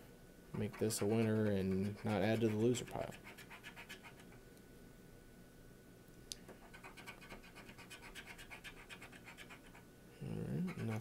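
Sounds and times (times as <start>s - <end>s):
scratching lottery ticket coating: 0.6s - 4.3s, 10.6s - 11.0s.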